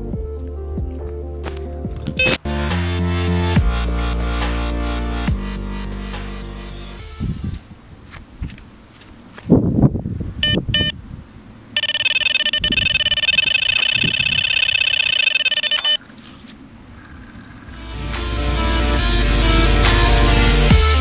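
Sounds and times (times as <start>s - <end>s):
electronic bite alarm beeps: 10.4s - 11.0s, 11.8s - 16.0s.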